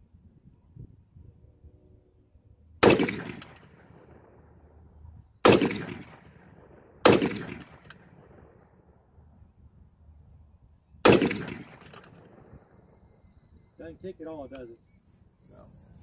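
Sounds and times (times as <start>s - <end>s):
rifle shots: 2.8s - 4.6s, 5.4s - 8.6s, 11.0s - 12.8s.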